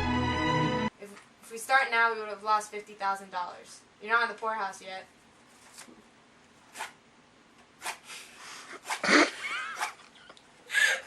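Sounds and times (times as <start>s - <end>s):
person breathing: 7.9s - 9.1s, 10.6s - 11.0s.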